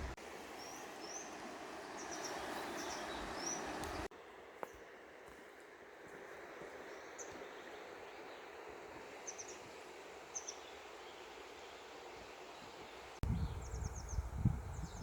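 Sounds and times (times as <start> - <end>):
river water rushing: 0.0 - 4.2.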